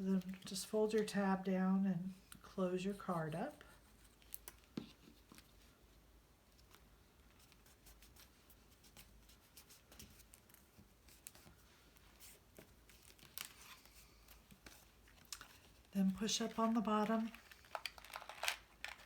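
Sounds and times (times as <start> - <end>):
sharp paper ticks: 16.4 - 19.0.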